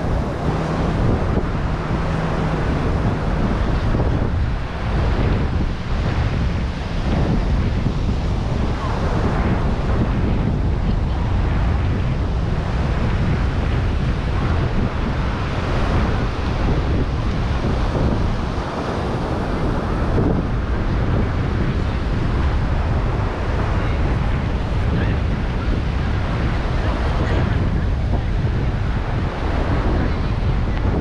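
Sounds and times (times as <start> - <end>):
ocean surf washing: 0.0 - 31.0
wind buffeting microphone: 0.0 - 31.0.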